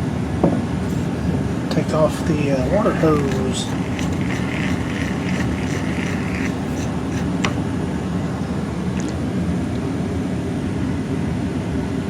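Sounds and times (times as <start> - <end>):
hose hissing: 2.4 - 7.8.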